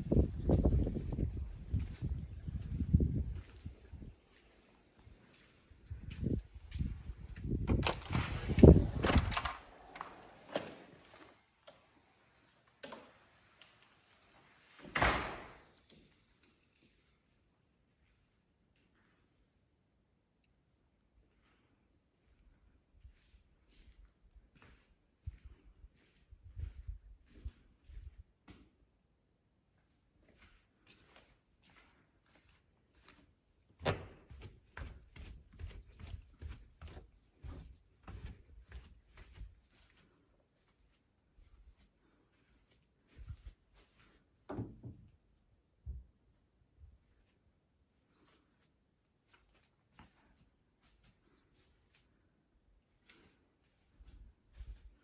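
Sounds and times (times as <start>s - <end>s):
clicks and clinks: 7.7s - 11.8s, 15.5s - 17.1s
footsteps on a wooden floor: 30.3s - 40.1s.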